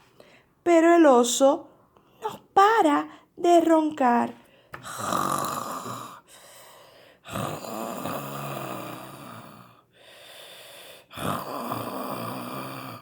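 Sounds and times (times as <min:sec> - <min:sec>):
woman imitating snoring: 0:04.8 - 0:06.3, 0:07.2 - 0:09.8, 0:11.1 - 0:13.0.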